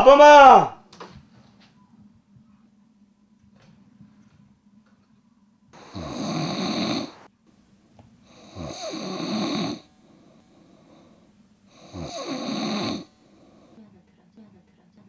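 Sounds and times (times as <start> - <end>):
person snoring heavily: 5.8 - 7.3, 8.2 - 13.8.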